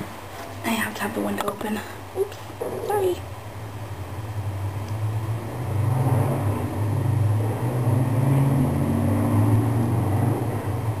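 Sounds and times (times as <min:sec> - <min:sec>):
vehicle engine rumble: 0:02.5 - 0:11.0.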